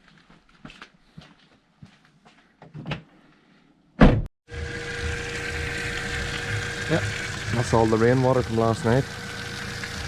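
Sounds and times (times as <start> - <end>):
loud thump: 4.0 - 4.3
electric pump humming: 4.5 - 10.0
water gushing: 4.5 - 10.0.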